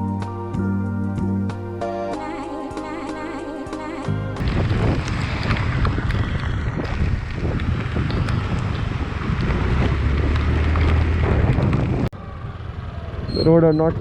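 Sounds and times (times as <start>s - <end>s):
wind buffeting microphone: 4.4s - 12.1s
motorcycle engine running: 4.4s - 14.0s.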